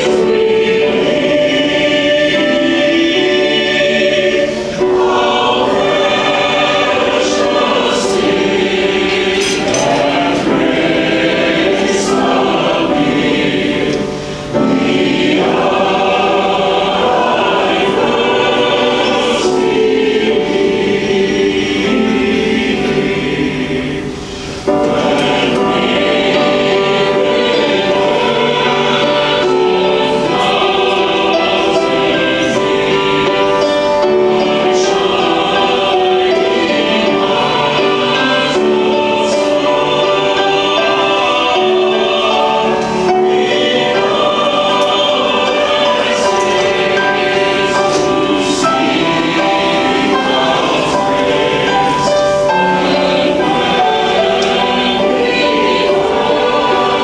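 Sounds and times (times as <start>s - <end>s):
choir singing a slow hymn: 0.0s - 57.0s.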